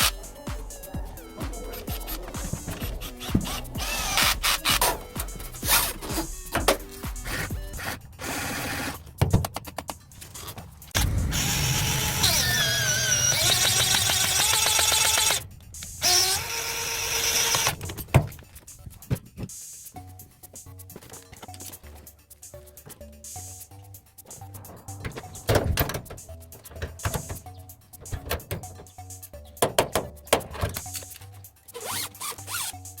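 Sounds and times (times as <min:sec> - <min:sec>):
background music: 0:00.0 - 0:33.0
power tool running: 0:03.1 - 0:04.8, 0:11.2 - 0:15.4
clattering work noises: 0:24.2 - 0:32.5.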